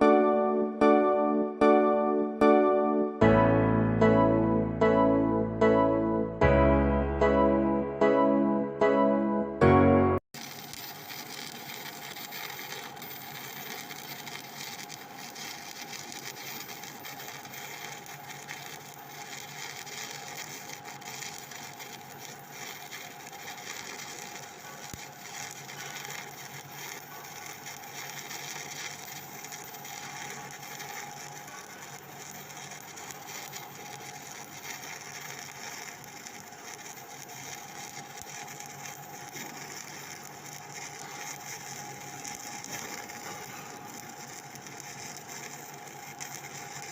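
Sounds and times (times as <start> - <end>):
welding arc crackling: 10.3 - 46.9.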